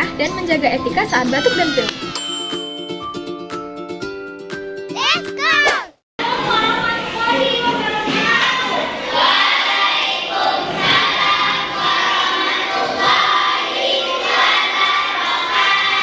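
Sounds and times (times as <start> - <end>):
children singing in unison: 7.9 - 16.0.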